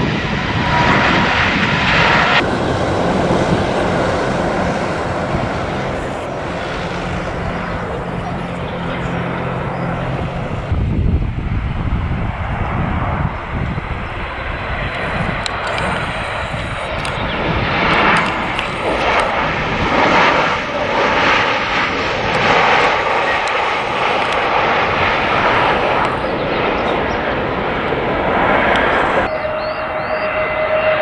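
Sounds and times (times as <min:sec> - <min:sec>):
faint high whine: 0:00.0 - 0:10.7, 0:29.3 - 0:31.0
jet engines rushing: 0:00.0 - 0:31.0.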